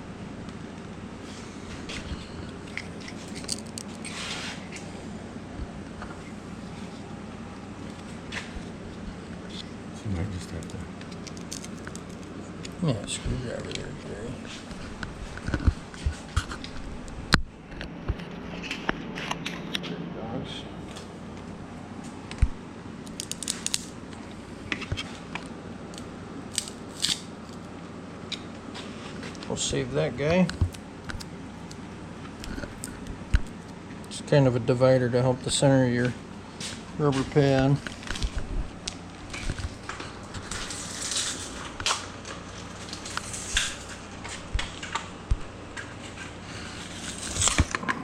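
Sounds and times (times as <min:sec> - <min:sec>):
scraping and light clicks: 0:01.7 - 0:04.9.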